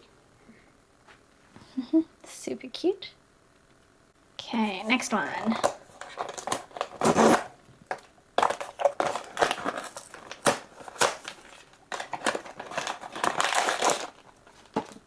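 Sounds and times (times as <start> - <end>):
packaging crinkling: 4.8 - 15.0.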